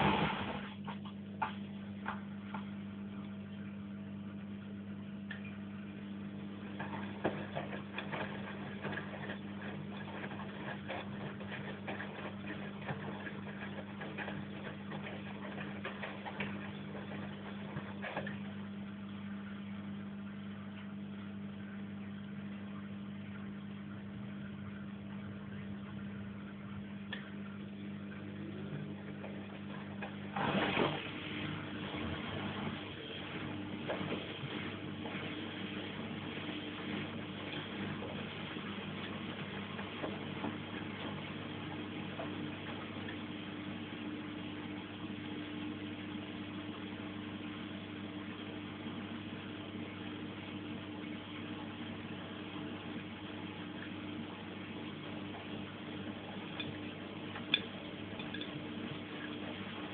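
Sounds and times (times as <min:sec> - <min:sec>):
washing machine humming: 0:00.0 - 0:59.9
laundry rattling in drum: 0:06.7 - 0:18.5, 0:28.6 - 0:43.3.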